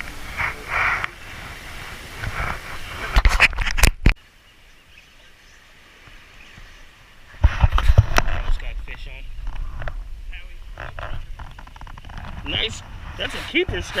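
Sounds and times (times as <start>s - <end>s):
outdoor background noise: 0.0s - 14.0s.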